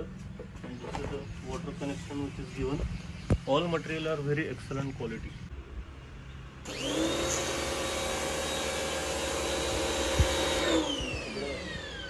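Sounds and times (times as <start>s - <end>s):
pressure washer motor whining: 6.7s - 12.0s.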